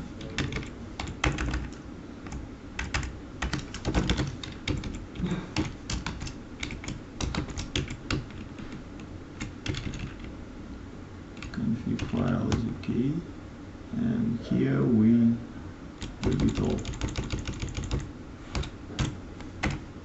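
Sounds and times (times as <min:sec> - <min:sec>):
typing on a keyboard: 0:00.2 - 0:08.5, 0:09.4 - 0:10.3, 0:11.4 - 0:12.7, 0:16.0 - 0:19.8.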